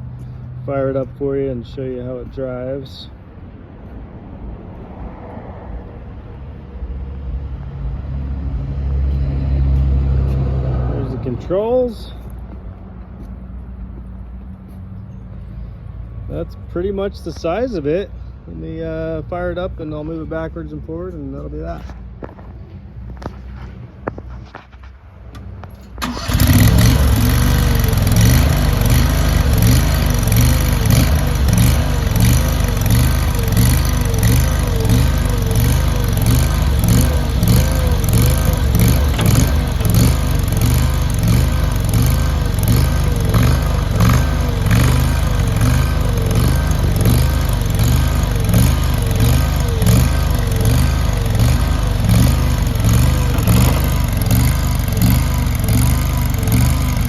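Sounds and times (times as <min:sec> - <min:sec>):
loader engine running: 0:18.6 - 0:57.0.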